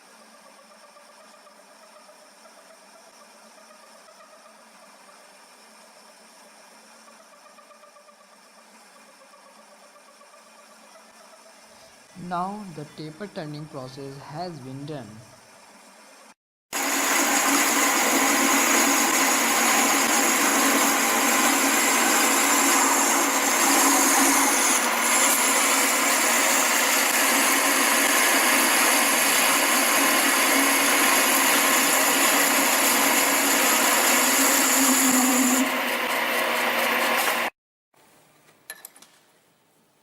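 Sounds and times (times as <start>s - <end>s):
high thin whine: 12.1s - 15.3s
lathe machining metal: 16.8s - 37.5s.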